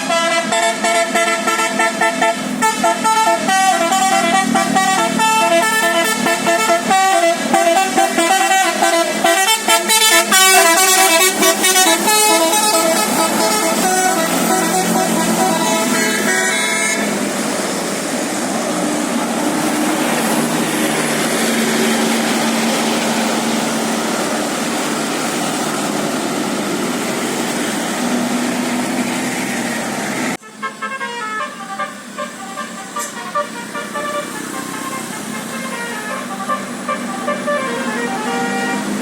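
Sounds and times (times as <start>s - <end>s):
bus musical horn: 0.0s - 17.6s, 30.2s - 39.0s
vehicle and road noise: 0.0s - 39.0s.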